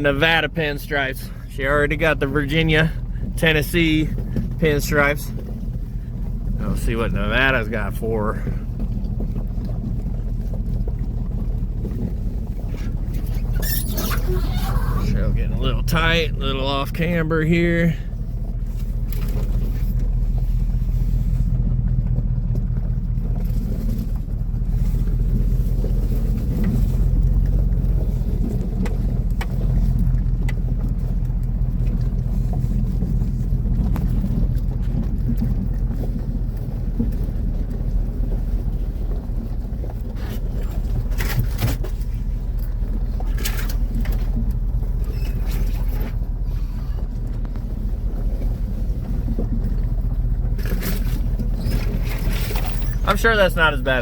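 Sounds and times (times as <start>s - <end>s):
truck engine droning: 0.0s - 54.0s
brush scraping truck body: 50.5s - 54.0s.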